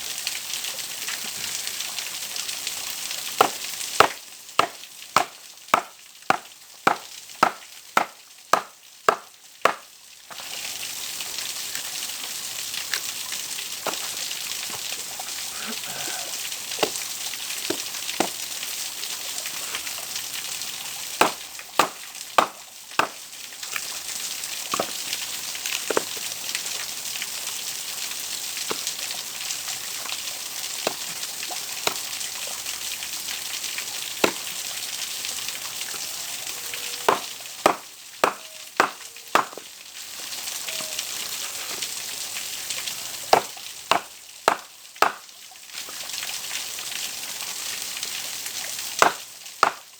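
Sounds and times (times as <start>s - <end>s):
stream water rushing: 2.8s - 41.9s, 42.5s - 45.2s, 48.9s - 49.9s
sharp knocks: 3.4s - 9.8s, 21.2s - 23.2s, 37.1s - 39.6s, 43.4s - 45.2s.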